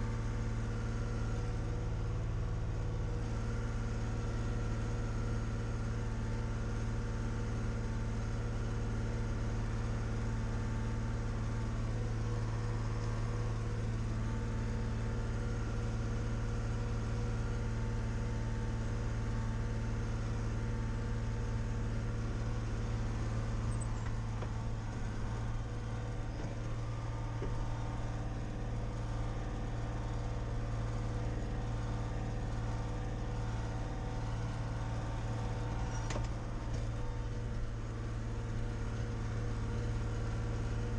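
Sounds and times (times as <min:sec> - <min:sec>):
tractor diesel engine droning: 0:22.0 - 0:40.1.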